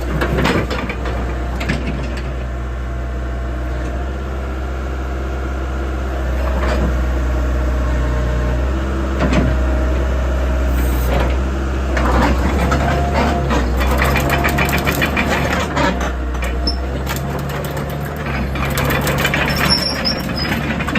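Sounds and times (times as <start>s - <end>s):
excavator diesel engine humming: 0.0s - 20.9s
clicks and clanks: 12.0s - 20.9s.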